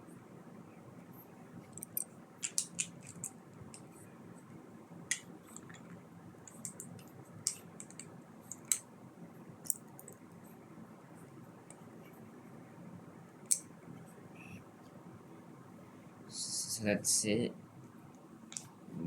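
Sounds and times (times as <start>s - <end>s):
plastic bricks clicking: 1.8s - 3.8s, 5.1s - 8.8s.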